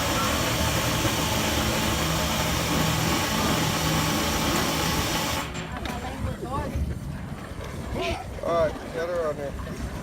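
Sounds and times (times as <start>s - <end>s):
loud steady hiss: 0.0s - 5.7s
low machine hum: 0.0s - 7.9s.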